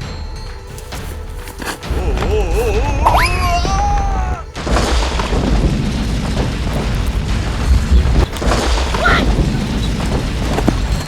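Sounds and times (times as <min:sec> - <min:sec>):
music: 0:00.0 - 0:11.0
low booming rumble: 0:03.1 - 0:11.0.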